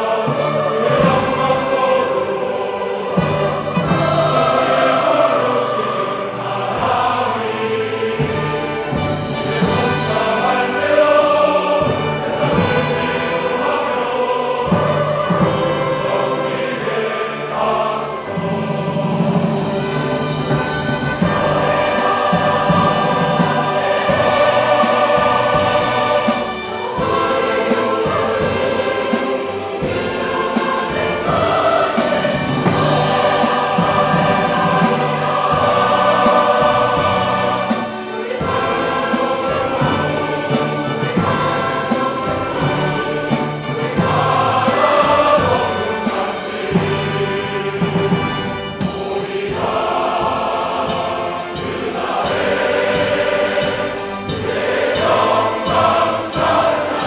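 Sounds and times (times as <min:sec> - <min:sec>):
choir singing: 0:00.0 - 0:57.0
orchestral accompaniment: 0:00.0 - 0:57.0.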